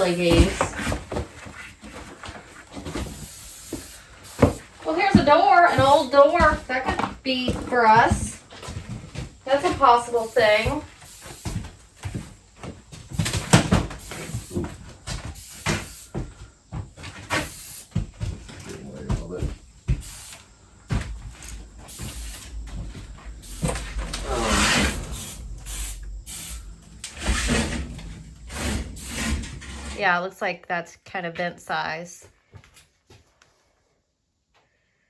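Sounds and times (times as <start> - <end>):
objects knocking and scraping: 3.8 - 10.1, 20.8 - 30.1.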